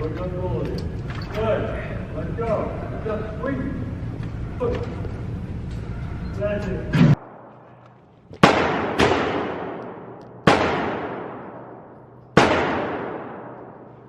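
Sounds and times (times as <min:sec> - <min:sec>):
gunshots with echoing decay: 0:07.0 - 0:14.0.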